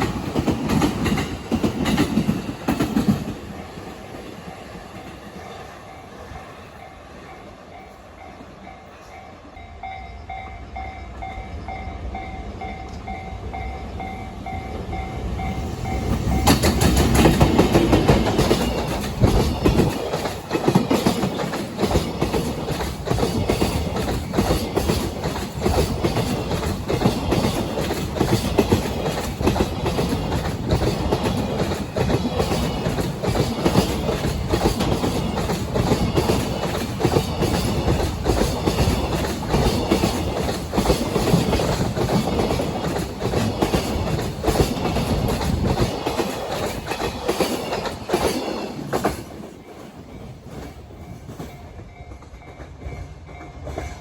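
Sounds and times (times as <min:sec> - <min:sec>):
train wheels clattering over joints: 0:00.0 - 0:05.5, 0:15.3 - 0:54.0
level crossing warning bell: 0:05.5 - 0:16.7.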